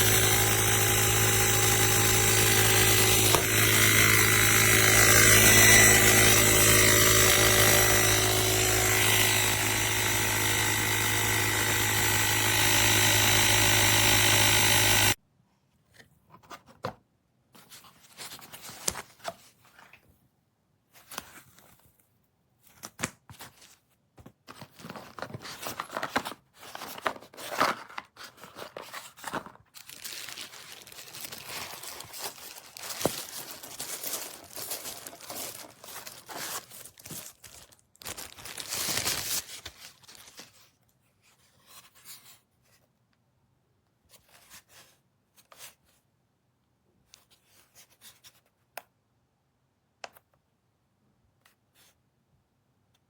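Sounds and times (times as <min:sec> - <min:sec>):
rustling and crinkling handling noises: 0:20.9 - 0:41.0.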